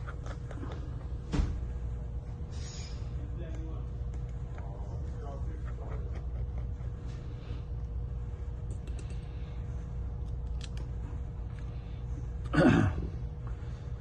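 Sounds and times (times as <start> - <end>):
steady low hum: 0.0 - 14.0
small tools clicking: 8.7 - 9.3, 10.2 - 10.9.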